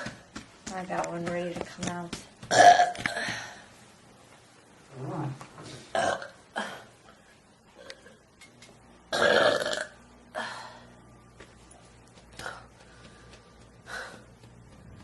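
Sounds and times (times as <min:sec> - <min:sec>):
person burping loudly: 0:02.5 - 0:03.2, 0:05.9 - 0:06.9, 0:09.1 - 0:10.4.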